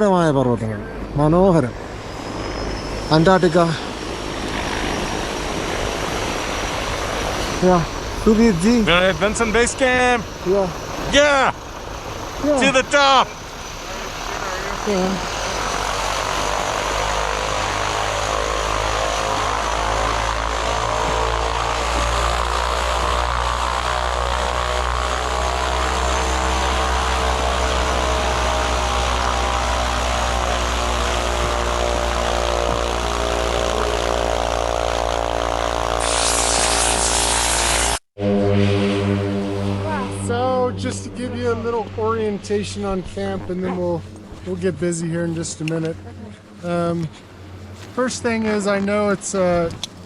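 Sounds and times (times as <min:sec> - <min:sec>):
turboprop engines droning: 0:00.0 - 0:50.0
harsh hiss: 0:01.9 - 0:23.8.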